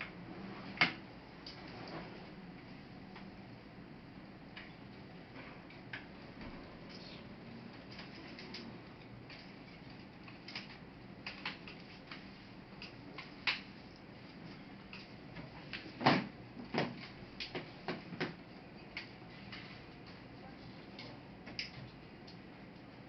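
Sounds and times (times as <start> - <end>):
clicks and knocks of laptop parts: 15.7 - 18.4.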